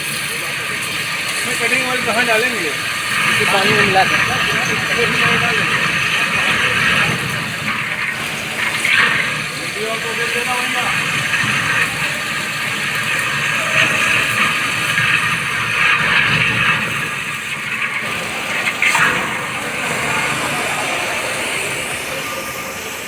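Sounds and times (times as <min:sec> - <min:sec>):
drilling machine rushing noise: 0:00.0 - 0:23.0.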